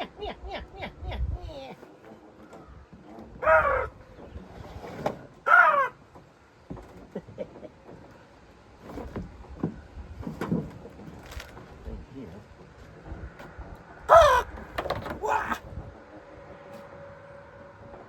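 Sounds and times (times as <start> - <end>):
crow cawing: 5.5 - 6.0, 14.1 - 14.5.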